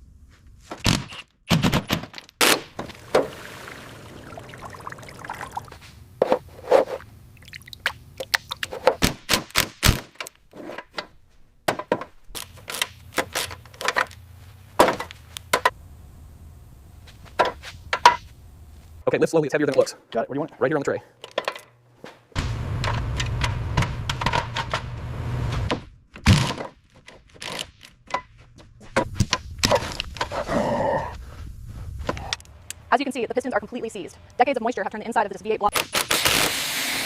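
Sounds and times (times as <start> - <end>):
faint low hum: 13.0 - 21.2.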